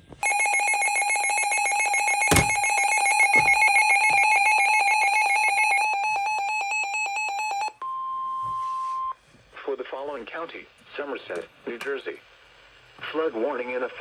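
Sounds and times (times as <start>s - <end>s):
pulsing ringing alarm tone: 0.2s - 7.8s.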